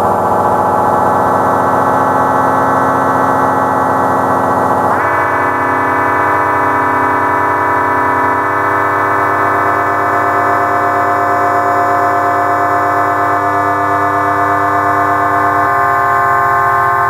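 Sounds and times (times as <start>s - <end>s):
synthesizer drone chord: 0.0s - 17.0s.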